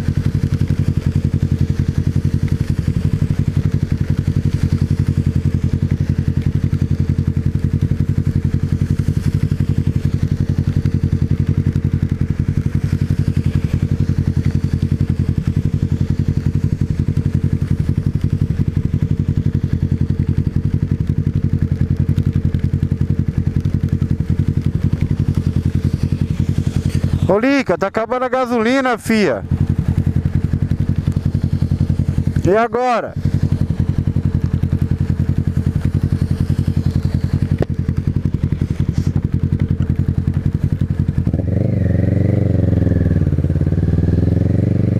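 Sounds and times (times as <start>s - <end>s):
motorcycle engine running: 0.0s - 44.9s.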